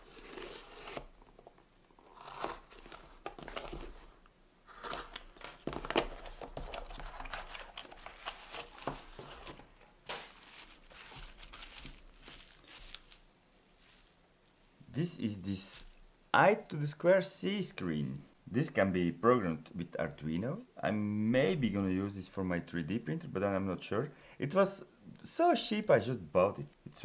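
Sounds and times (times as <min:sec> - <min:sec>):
packaging crinkling and tearing: 0:04.7 - 0:13.3.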